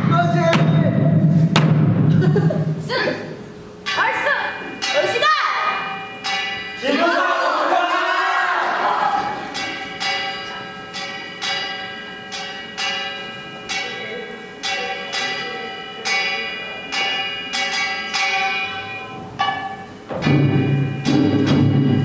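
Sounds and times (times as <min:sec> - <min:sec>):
small brass hand gong clanging: 0:03.8 - 0:07.0, 0:09.4 - 0:22.0.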